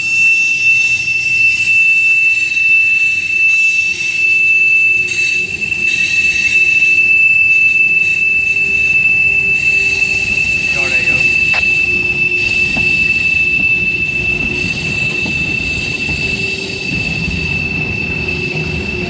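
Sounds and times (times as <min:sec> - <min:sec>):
freight train rumbling on rails: 0:05.1 - 0:19.0.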